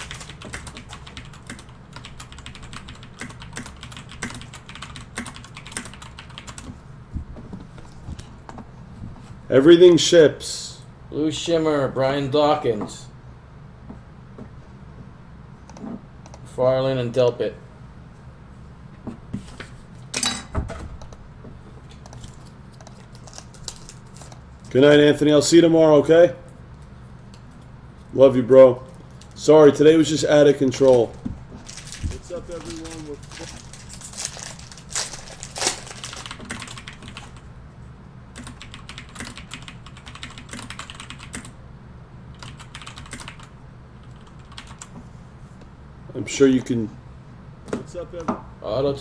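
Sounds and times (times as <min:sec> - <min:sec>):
keyboard typing: 0:00.0 - 0:06.8, 0:22.0 - 0:24.4, 0:35.5 - 0:37.5, 0:38.4 - 0:41.6, 0:42.3 - 0:44.9
packaging rustle or knock: 0:30.9 - 0:36.5.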